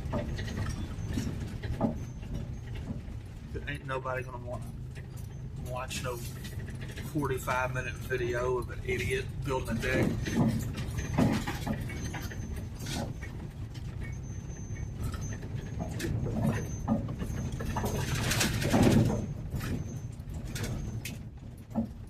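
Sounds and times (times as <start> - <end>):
rattles and creaks: 0.0 - 22.0
van driving over rough ground: 0.0 - 22.0.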